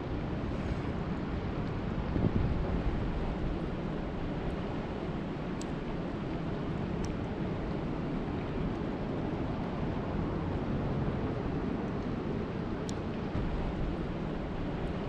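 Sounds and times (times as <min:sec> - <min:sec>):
wind rumbling on microphone: 0:00.0 - 0:15.0
faint ticks: 0:05.6 - 0:05.8.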